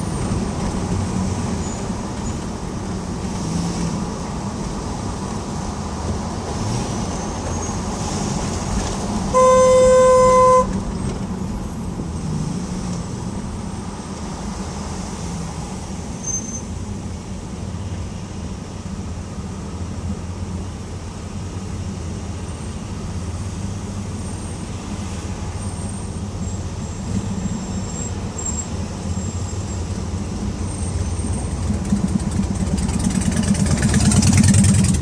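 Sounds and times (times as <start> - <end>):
road traffic: 0.0 - 35.0
vehicle horn honking: 9.3 - 10.8.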